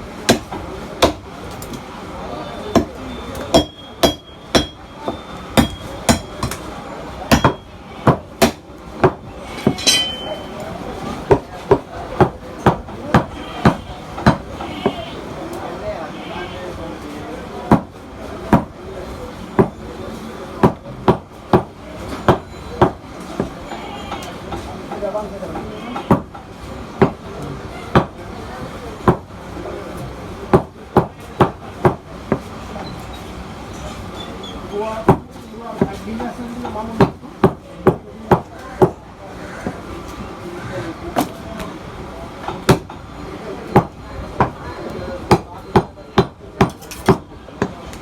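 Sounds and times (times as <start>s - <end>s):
cleaver chopping through meat: 0.3s - 1.2s, 5.6s - 6.6s, 7.3s - 9.8s, 11.3s - 15.0s
heavy blade chopping meat and bone: 0.3s - 1.3s, 2.7s - 4.8s, 5.5s - 6.7s, 7.3s - 10.3s, 11.3s - 14.6s, 20.6s - 23.6s, 26.0s - 26.4s, 27.0s - 27.2s, 30.5s - 32.5s, 36.8s - 39.0s, 42.6s - 43.0s, 45.3s - 47.8s.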